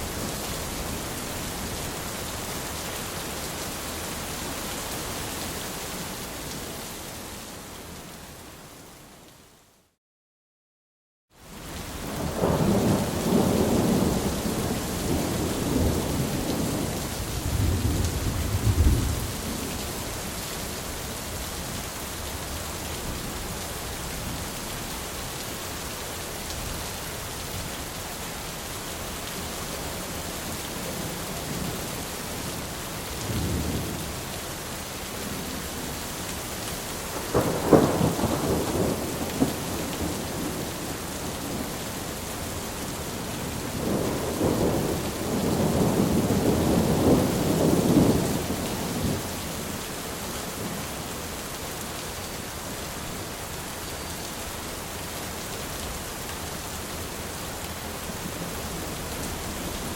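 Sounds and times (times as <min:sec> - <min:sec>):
heavy rain: 0:00.0 - 0:09.7, 0:11.3 - 0:59.9
rolling thunder: 0:12.3 - 0:19.6, 0:37.1 - 0:40.8, 0:43.8 - 0:49.2
sharp thunderclap: 0:37.3 - 0:40.6.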